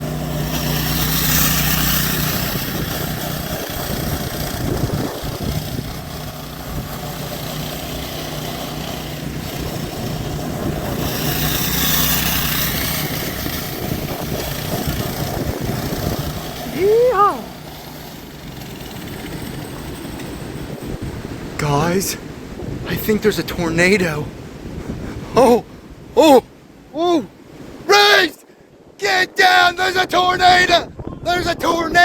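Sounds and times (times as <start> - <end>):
steady low hum: 0.0 - 21.6
wind gusting over microphone: 0.0 - 28.0, 28.7 - 32.0.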